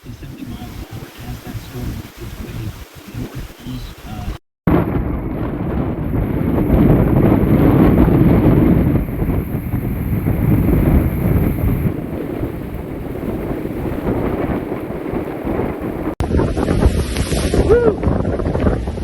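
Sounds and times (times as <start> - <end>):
strong wind buffeting microphone: 0.0 - 19.0.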